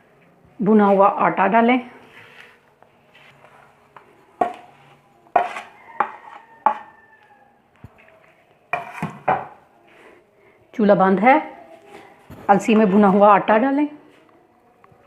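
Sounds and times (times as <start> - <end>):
spoon knocking on metal dish: 4.4 - 4.7, 5.4 - 6.9, 8.7 - 9.6.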